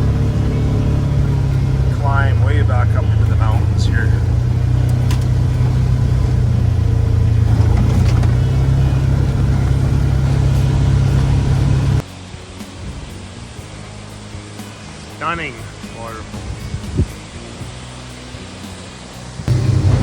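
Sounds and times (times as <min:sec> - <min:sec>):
vehicle engine droning: 0:00.0 - 0:12.0, 0:13.4 - 0:20.0.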